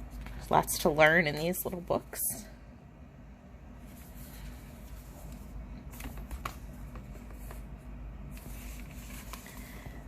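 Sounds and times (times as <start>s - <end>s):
low steady hum: 0.0s - 10.0s
board book pages tapping and rustling: 5.2s - 7.8s.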